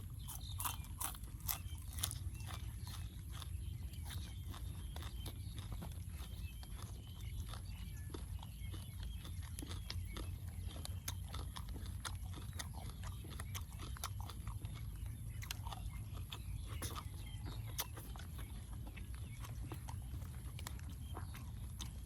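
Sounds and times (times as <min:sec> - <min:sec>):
chewing and mouth smacking: 0:00.0 - 0:22.0.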